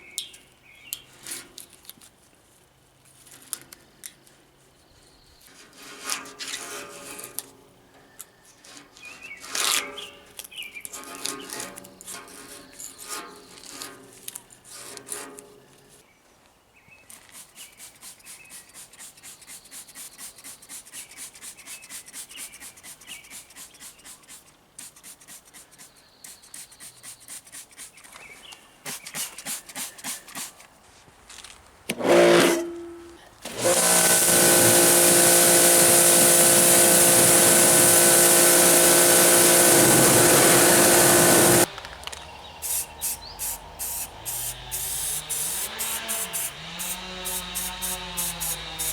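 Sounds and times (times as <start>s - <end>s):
pressure washer spraying: 33.5s - 41.7s, 42.6s - 48.9s
steady machine hum: 33.5s - 41.7s, 42.3s - 48.9s
rhythmic hand rubbing: 42.6s - 48.9s.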